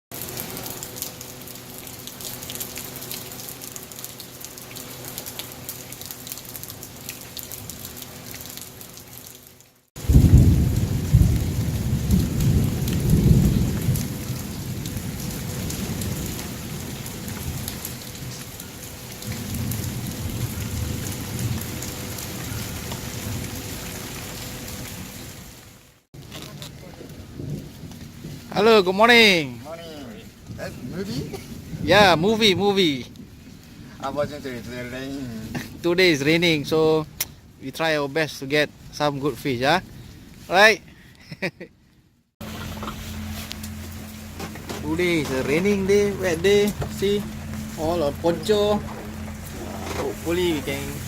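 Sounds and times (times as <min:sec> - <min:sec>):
rain hiss: 0:00.1 - 0:41.5, 0:42.4 - 0:51.0
thunder rumbling: 0:10.0 - 0:18.5, 0:19.2 - 0:24.0, 0:26.8 - 0:29.6, 0:30.2 - 0:34.4, 0:42.4 - 0:51.0.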